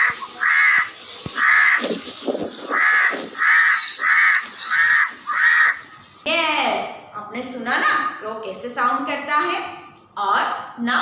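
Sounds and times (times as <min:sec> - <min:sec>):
crow cawing: 0:00.0 - 0:02.0, 0:02.6 - 0:06.0.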